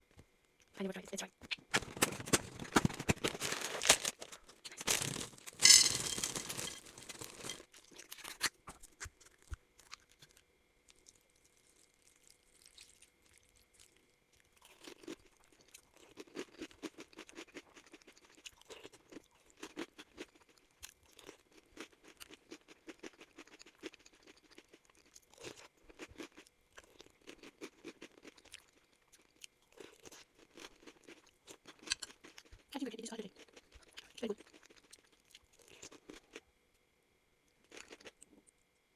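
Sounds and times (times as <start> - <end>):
crunchy chewing: 1.4 - 36.4, 37.6 - 38.7
cereal packet rustling and tearing: 1.5 - 10.2.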